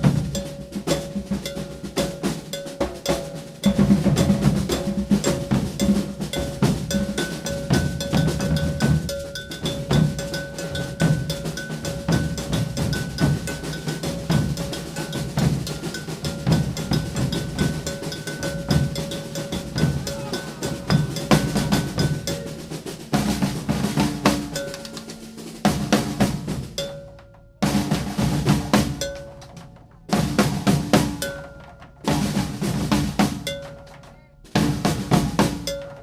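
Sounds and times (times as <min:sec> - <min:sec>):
iron bell ringing: 0:00.0 - 0:22.9, 0:24.3 - 0:25.3, 0:26.7 - 0:28.3, 0:28.9 - 0:29.6, 0:31.1 - 0:31.8, 0:33.4 - 0:34.0, 0:35.3 - 0:36.0
deep bass drums beating: 0:00.0 - 0:36.0
snare drum strokes: 0:00.0 - 0:36.0.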